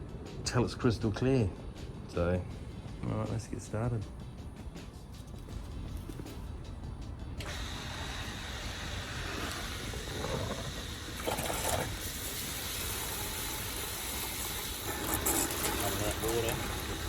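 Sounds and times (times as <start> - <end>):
electric water pump whining: 5.9 - 17.0.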